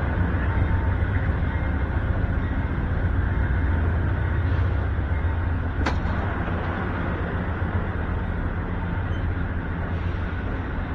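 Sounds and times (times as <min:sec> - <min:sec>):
train rumbling past: 0:00.0 - 0:10.9.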